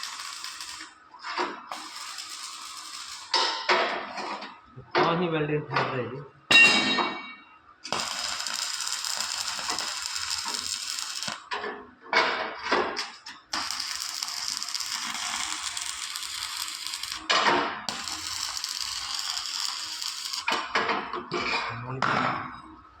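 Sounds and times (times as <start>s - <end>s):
welding arc crackling and sizzling: 0.0s - 3.7s, 7.8s - 11.5s, 13.0s - 20.7s.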